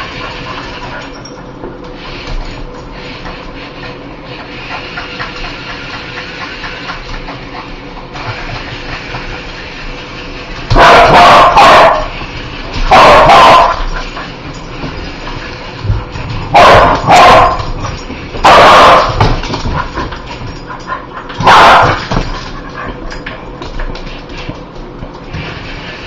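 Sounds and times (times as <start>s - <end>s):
dog barking loudly: 10.7s - 12.1s, 12.9s - 13.9s, 16.5s - 17.7s, 18.4s - 19.3s, 21.4s - 22.0s.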